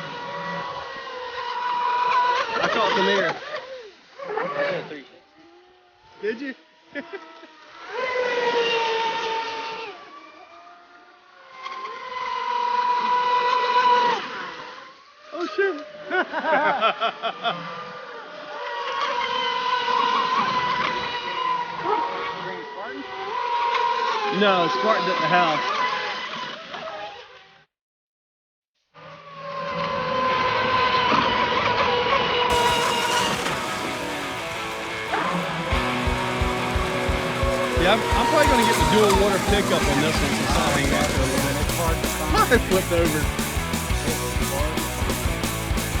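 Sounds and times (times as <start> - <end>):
electric motor whining: 32.5 - 45.6
water spray hiss: 32.5 - 45.9.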